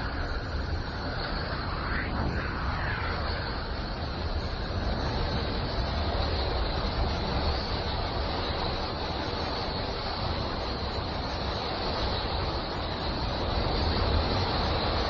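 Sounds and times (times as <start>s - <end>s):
deep rumbling hiss: 0.0s - 15.0s.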